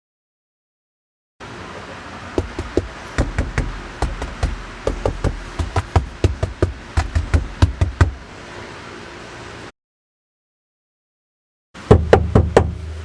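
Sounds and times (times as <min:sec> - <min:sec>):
knuckles knocking on car panel: 0:02.4 - 0:08.2, 0:11.9 - 0:12.8.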